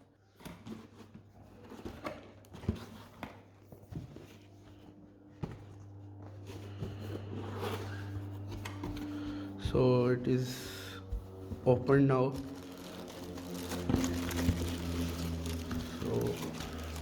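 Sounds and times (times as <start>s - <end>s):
low steady hum: 0.1s - 17.0s
cardboard box being opened: 6.4s - 9.2s, 11.5s - 17.0s
packaging rustling: 11.3s - 17.0s.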